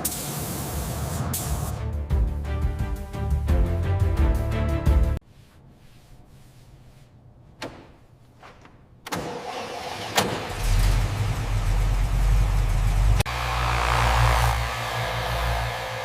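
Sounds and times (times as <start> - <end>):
car engine starting and idling: 9.1 - 13.3.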